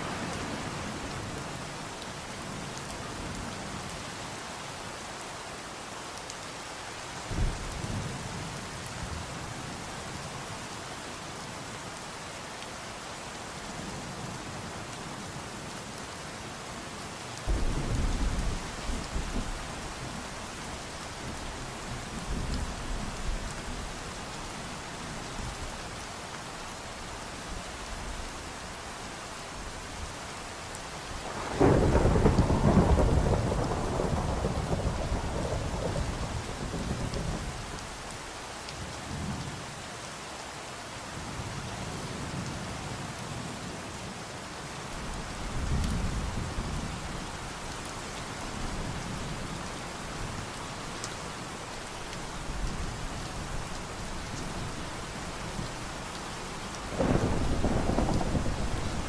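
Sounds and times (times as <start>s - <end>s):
steady rain falling: 0.0s - 59.0s
thunder rumbling: 31.2s - 37.6s, 56.9s - 59.0s.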